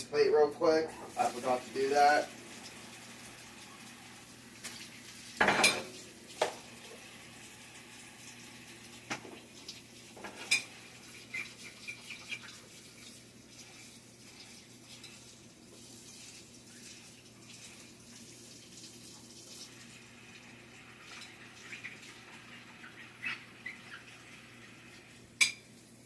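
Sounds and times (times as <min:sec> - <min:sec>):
plate and cutlery clattering: 0:05.4 - 0:05.9.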